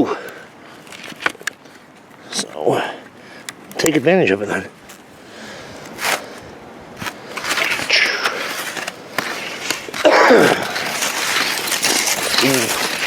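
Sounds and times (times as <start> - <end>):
skis scraping over snow: 4.5 - 13.0.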